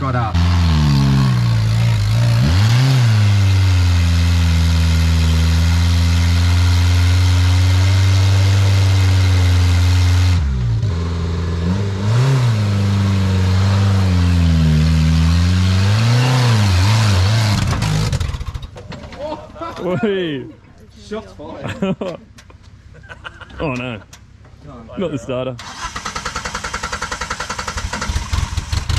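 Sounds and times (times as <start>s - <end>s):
engine revving under load: 0.0s - 18.7s.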